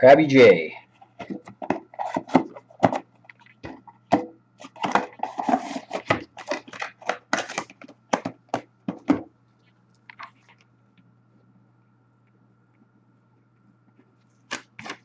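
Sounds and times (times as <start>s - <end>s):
packaging crinkling: 1.1s - 10.6s.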